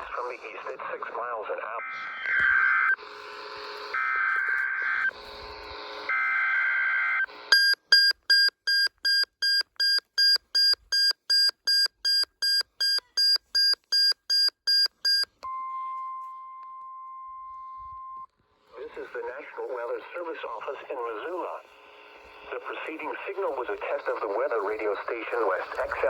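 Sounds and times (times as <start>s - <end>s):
warbling data tones: 1.8s - 7.8s
fast buzzy alarm beeps: 3.9s - 15.3s.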